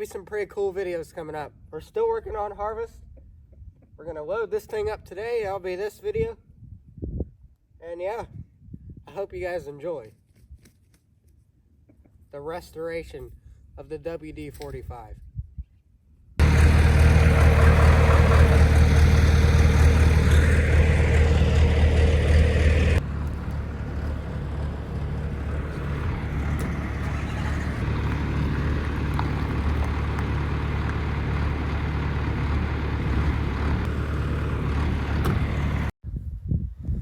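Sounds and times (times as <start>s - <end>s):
vehicle engine humming: 16.4s - 35.9s.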